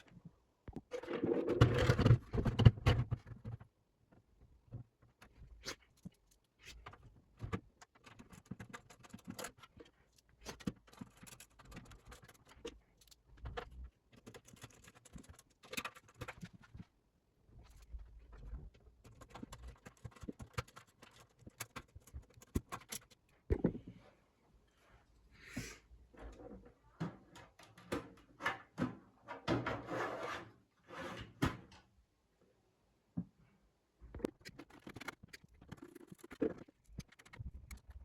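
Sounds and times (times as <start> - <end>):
computer parts clicking and rattling: 6.9 - 16.7, 19.0 - 23.6, 34.2 - 38.0.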